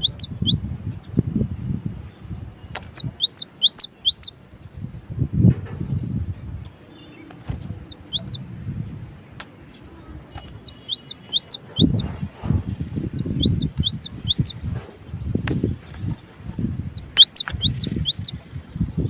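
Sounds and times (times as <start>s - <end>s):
bird whistling song: 0.0s - 0.6s, 2.6s - 4.5s, 7.0s - 8.6s, 10.3s - 12.2s, 13.0s - 16.2s, 16.8s - 18.5s
low rumbling and bumping: 4.9s - 6.7s, 11.8s - 17.7s.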